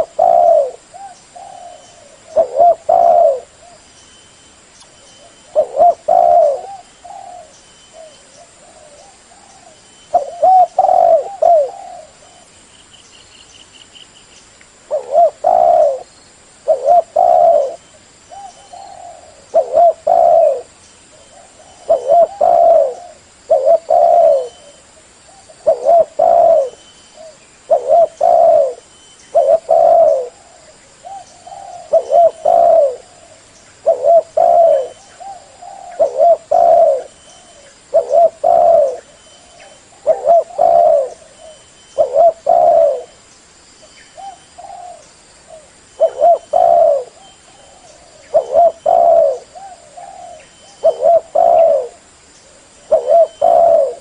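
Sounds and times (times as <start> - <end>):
dove cooing: 0.0 - 3.9, 5.2 - 12.5, 14.9 - 43.2, 44.1 - 54.0.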